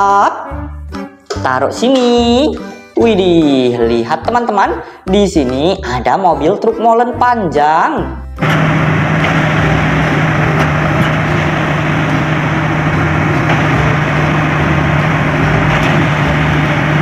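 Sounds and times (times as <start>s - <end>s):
heavy truck engine running: 8.4s - 17.0s.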